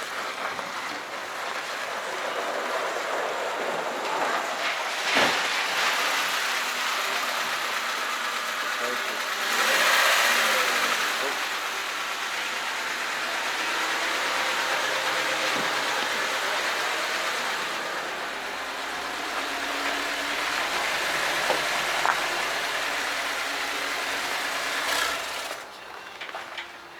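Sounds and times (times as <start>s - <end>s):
car engine running: 0.0s - 26.1s
road noise inside car: 0.0s - 26.2s
rattle: 13.8s - 25.6s.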